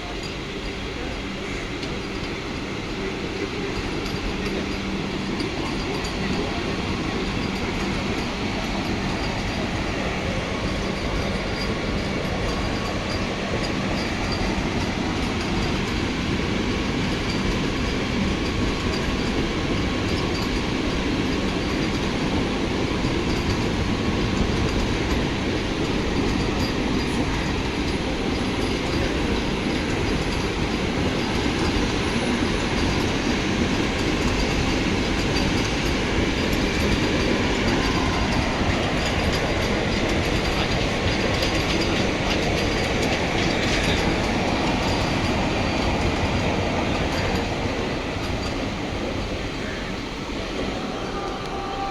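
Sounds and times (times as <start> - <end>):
train rumbling on rails: 0.0 - 51.9.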